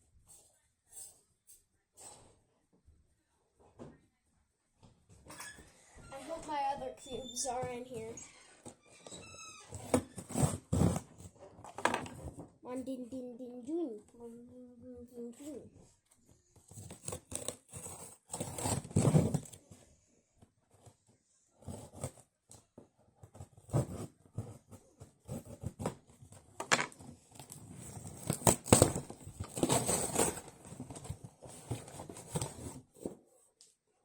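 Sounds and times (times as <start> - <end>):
cardboard package torn open: 27.3 - 32.8.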